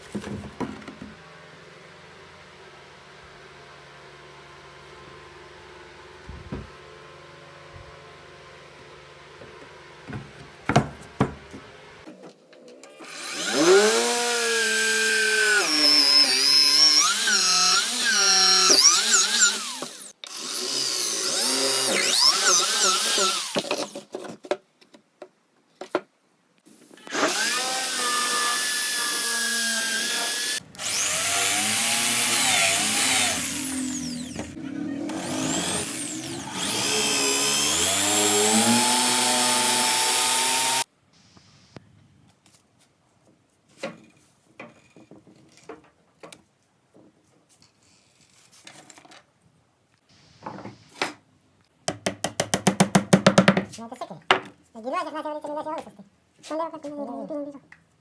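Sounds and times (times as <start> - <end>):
power tool motor whining on wood: 13.0 - 23.7, 27.1 - 40.9.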